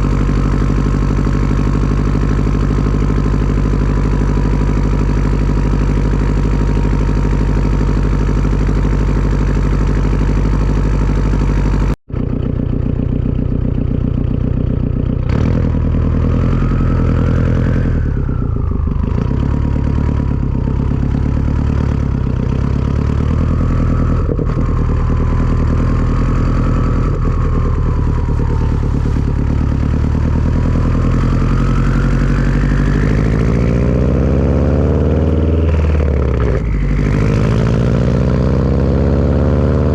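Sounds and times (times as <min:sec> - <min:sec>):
turbocharged car engine: 0:00.0 - 0:39.9
turbo whistle: 0:16.3 - 0:19.0.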